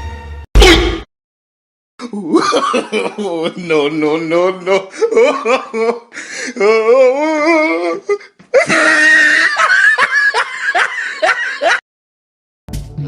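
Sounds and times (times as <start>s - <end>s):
person laughing: 2.0s - 11.8s.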